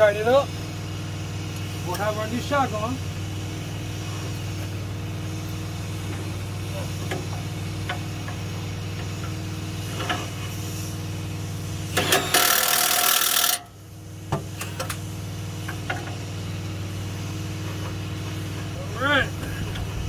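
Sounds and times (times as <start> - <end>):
steady low hum: 16.2 - 20.0
loud rushing air burst: 19.4 - 20.0.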